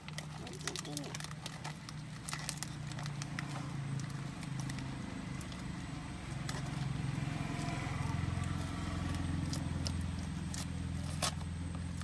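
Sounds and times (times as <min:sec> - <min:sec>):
clicks and crackles: 0:00.0 - 0:05.7
vehicle engine rumbling: 0:00.0 - 0:12.0.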